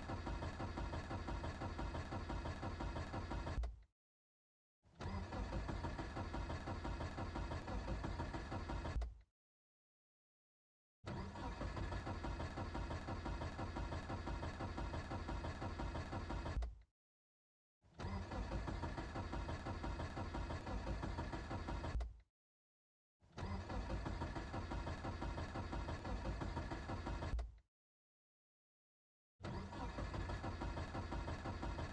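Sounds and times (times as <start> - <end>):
car starter cranking engine: 0.0 - 3.8, 5.0 - 9.1, 11.1 - 16.8, 18.0 - 22.1, 23.3 - 27.5, 29.4 - 31.9.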